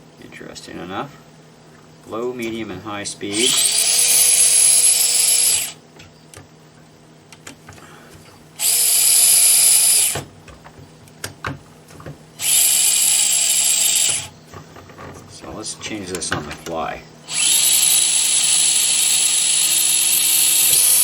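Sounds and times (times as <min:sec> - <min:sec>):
small electric motor whining: 0:03.3 - 0:05.8, 0:08.6 - 0:10.2, 0:12.4 - 0:14.4, 0:17.3 - 0:21.0.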